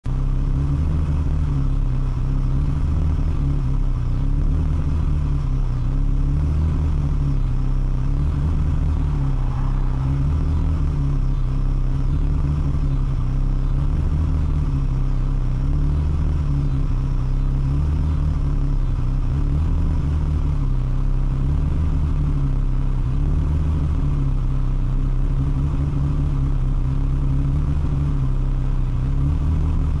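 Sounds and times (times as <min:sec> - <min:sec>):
car engine idling roughly: 0:00.0 - 0:30.0.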